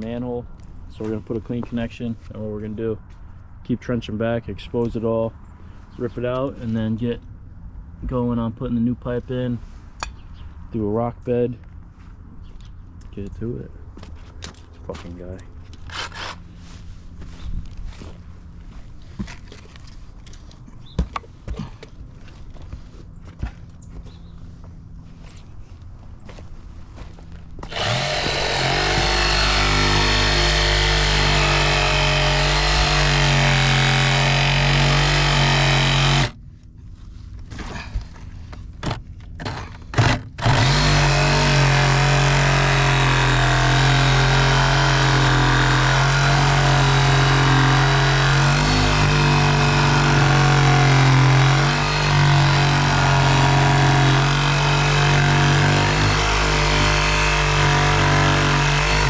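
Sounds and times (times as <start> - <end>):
excavator engine running: 27.0 - 36.4.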